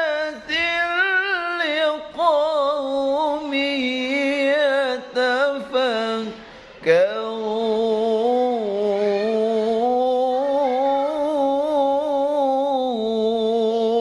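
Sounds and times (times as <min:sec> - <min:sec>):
person chanting melodically: 0:00.0 - 0:14.0.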